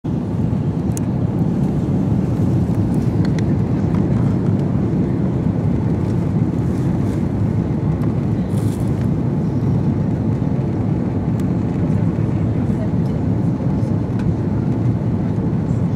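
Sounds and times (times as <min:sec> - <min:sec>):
airliner cabin roar: 0:00.0 - 0:15.9.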